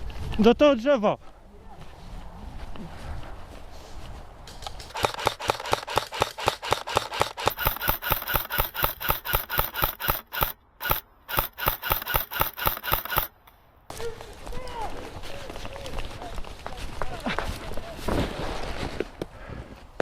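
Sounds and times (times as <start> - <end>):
airsoft rifle rapid fire: 4.9 - 13.3.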